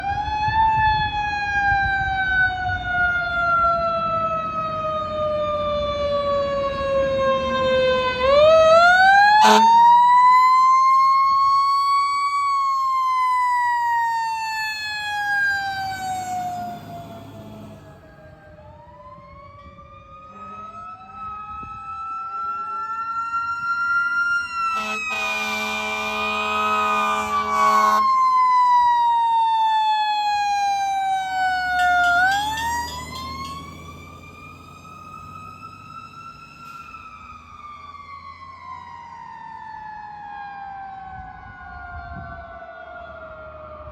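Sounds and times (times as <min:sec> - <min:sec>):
fire truck siren wailing: 0:00.0 - 0:43.9
horn blast: 0:09.4 - 0:09.8, 0:24.8 - 0:28.0.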